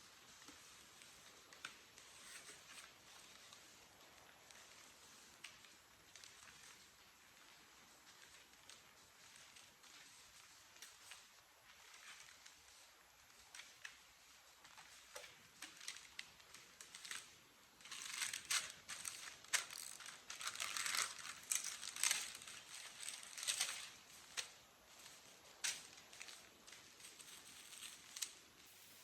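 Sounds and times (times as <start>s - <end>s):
packaging rustling and crinkling: 14.6s - 29.0s.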